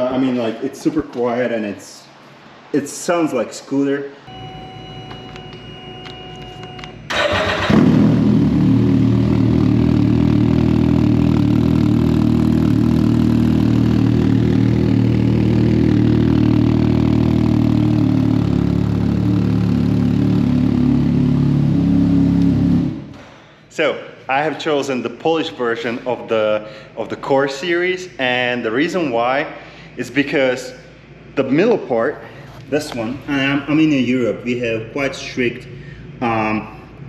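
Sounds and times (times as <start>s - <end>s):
faint steady tone: 4.3s - 7.0s
engine starting and idling: 7.1s - 8.8s.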